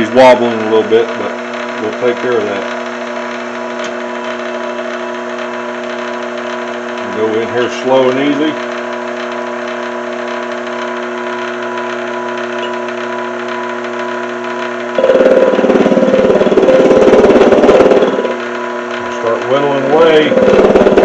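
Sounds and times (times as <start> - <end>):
lathe motor humming: 0.0 - 21.0
lathe tool cutting metal: 14.9 - 21.0.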